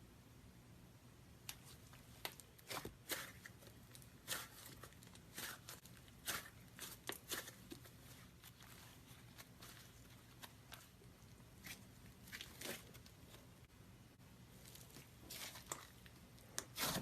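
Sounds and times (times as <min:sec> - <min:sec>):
slime squished by hand: 0:01.4 - 0:13.4.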